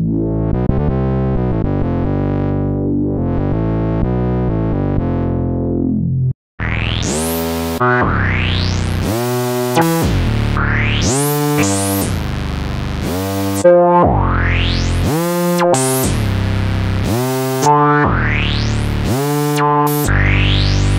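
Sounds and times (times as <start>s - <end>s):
low synth bass: 0.0s - 20.9s
synthesizer sustained chords: 7.0s - 20.9s.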